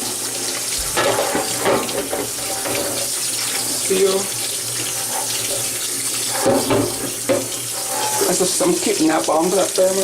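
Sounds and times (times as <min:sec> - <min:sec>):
tap running into sink: 0:00.7 - 0:08.4.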